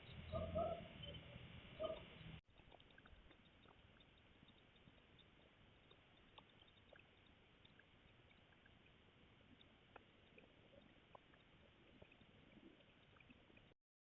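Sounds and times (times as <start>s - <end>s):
low microphone hiss: 0.0s - 2.4s
faint ticks and clicks: 0.0s - 13.8s.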